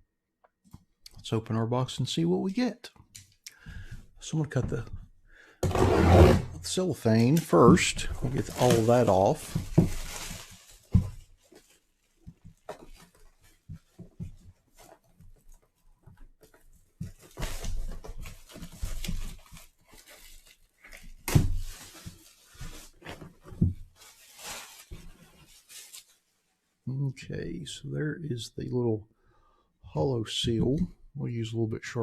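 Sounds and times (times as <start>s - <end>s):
cellophane crinkling and tearing: 7.3s - 13.6s, 17.2s - 26.3s.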